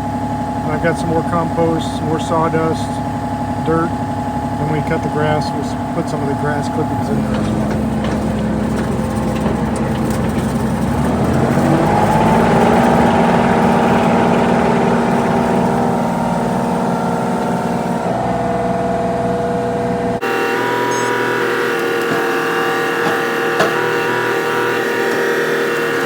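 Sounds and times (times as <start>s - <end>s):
excavator engine revving: 0.0s - 26.0s.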